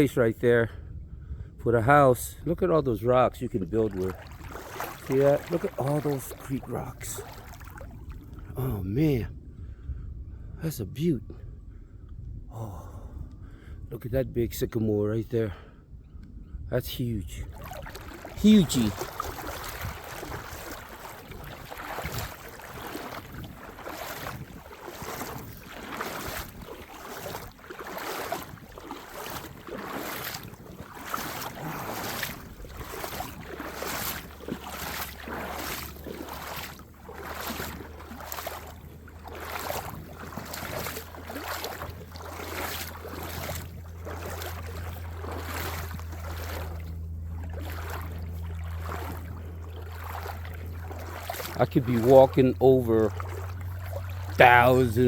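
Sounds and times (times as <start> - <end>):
low steady hum: 0.7 - 55.0
footsteps crunching on gravel: 3.8 - 7.8, 17.5 - 55.0.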